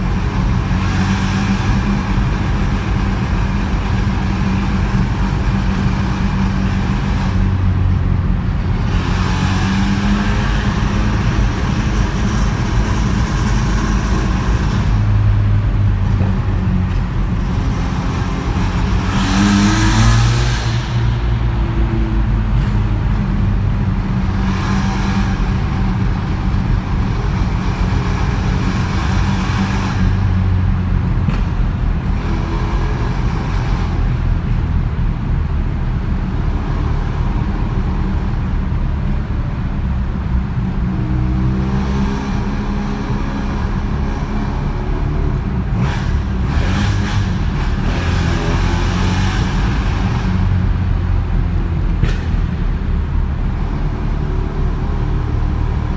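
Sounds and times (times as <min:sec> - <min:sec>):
rotary engine revving: 0:08.4 - 0:34.5, 0:41.3 - 0:55.9.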